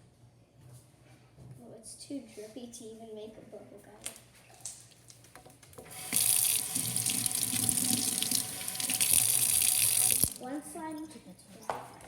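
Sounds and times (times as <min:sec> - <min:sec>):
water tap running: 0:05.8 - 0:10.5.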